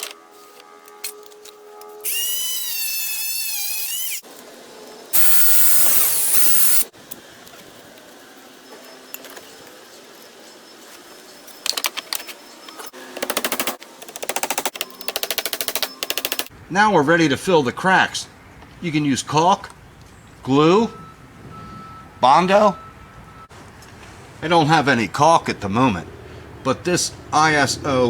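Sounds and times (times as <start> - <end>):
power tool whine: 1.9 - 4.3, 5.0 - 6.9
loud noisy burst: 5.2 - 6.9.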